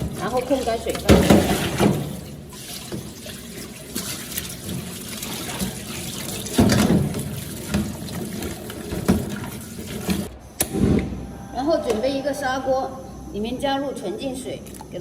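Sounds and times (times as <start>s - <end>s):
water splashing and sloshing: 0.0s - 10.3s.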